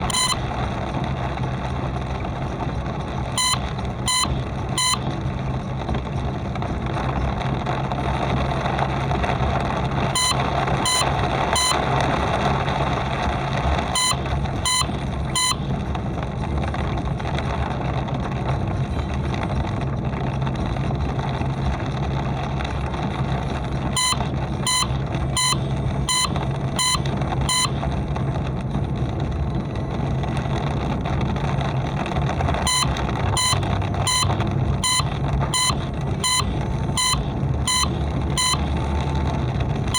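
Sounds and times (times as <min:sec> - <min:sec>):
short high electronic beeps: 0:00.0 - 0:00.5, 0:03.4 - 0:05.1, 0:10.2 - 0:11.8, 0:14.0 - 0:15.7, 0:24.0 - 0:27.8, 0:32.7 - 0:38.9
car engine hum: 0:00.0 - 0:39.9
road and rain noise: 0:00.0 - 0:39.9.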